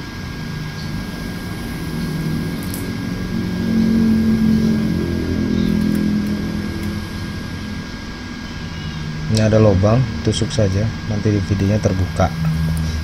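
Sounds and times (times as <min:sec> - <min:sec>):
vehicle engine passing by: 0:00.0 - 0:10.3.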